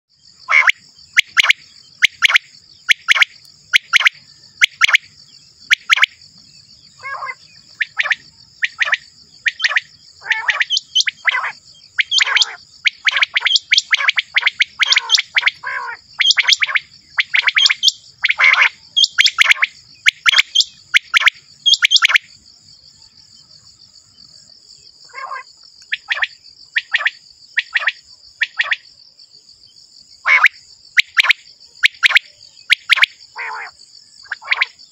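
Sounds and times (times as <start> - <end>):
quail calling: 0.5 - 5.1, 6.9 - 22.2, 25.1 - 28.8, 30.3 - 31.4, 32.0 - 34.8.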